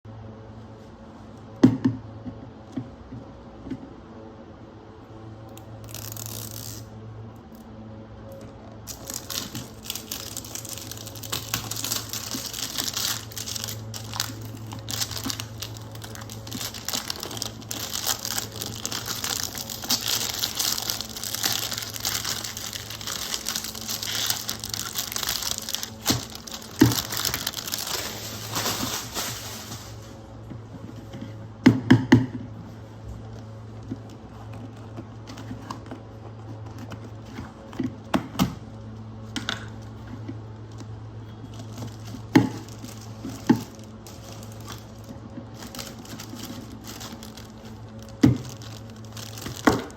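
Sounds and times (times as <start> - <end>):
steady low hum: 0.1 - 49.9
packaging crinkling and tearing: 5.5 - 6.9, 8.8 - 30.3, 40.6 - 49.9.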